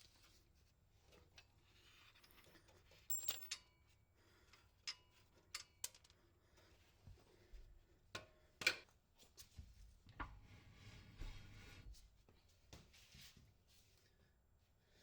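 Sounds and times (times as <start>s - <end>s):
quiet scraping and rustling: 0.0s - 3.0s, 9.2s - 14.2s.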